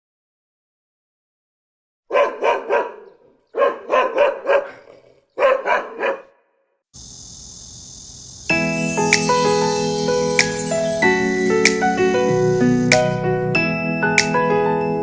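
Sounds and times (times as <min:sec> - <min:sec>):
dog barking: 0:02.1 - 0:06.6
music with bell-like notes: 0:08.5 - 0:15.0.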